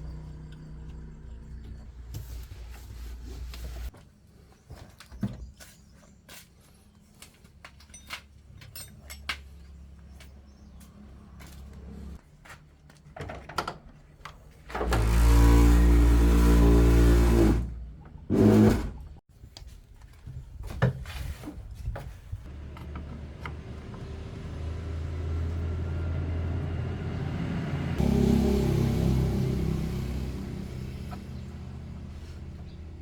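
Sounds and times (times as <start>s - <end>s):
car engine revving: 23.5s - 32.0s.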